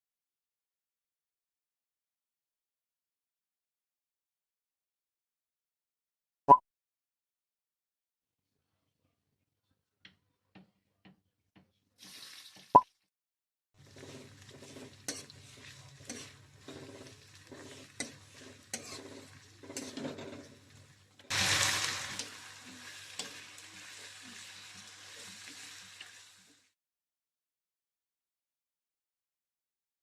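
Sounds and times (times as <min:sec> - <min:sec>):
food sizzling in hot oil: 0:12.0 - 0:12.8, 0:13.8 - 0:26.8.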